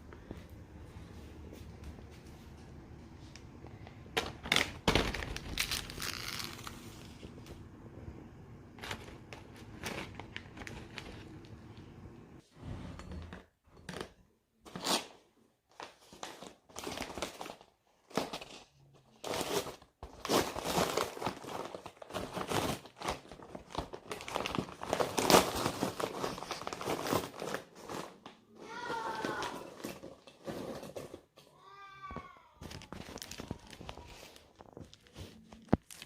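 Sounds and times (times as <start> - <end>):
paper bag tearing and crinkling: 4.5 - 7.1, 19.2 - 29.6, 32.6 - 36.0.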